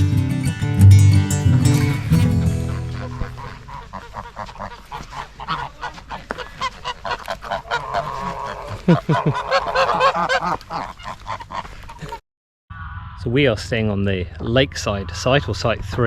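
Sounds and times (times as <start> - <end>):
geese honking: 1.8 - 12.2, 14.4 - 16.0.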